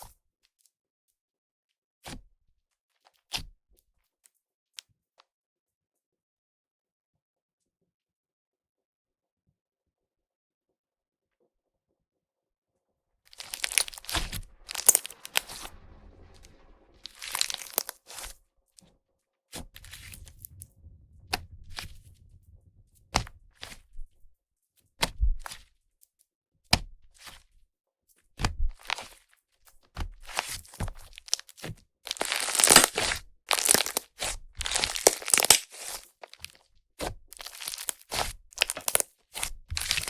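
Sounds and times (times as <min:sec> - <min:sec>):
air pops in slime: 0:13.4 - 0:15.7, 0:16.4 - 0:18.3, 0:32.2 - 0:36.0, 0:37.4 - 0:40.0
fizzy sizzling crackle: 0:13.4 - 0:15.7, 0:16.4 - 0:18.4, 0:32.1 - 0:36.6, 0:37.4 - 0:39.0, 0:39.7 - 0:40.0
slime squished by hand: 0:13.4 - 0:15.7, 0:16.4 - 0:18.4, 0:28.4 - 0:29.2, 0:30.0 - 0:40.0.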